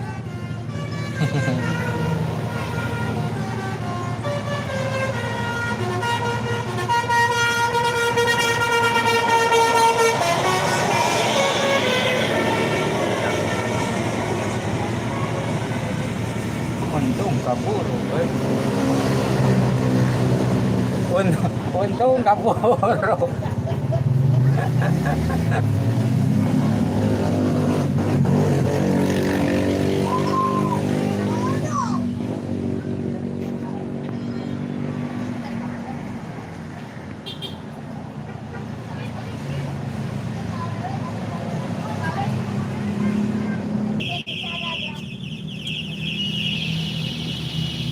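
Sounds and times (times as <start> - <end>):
bus musical horn playing: 0.0 - 14.6, 37.2 - 37.6, 44.0 - 47.9
bus engine running: 0.0 - 28.9.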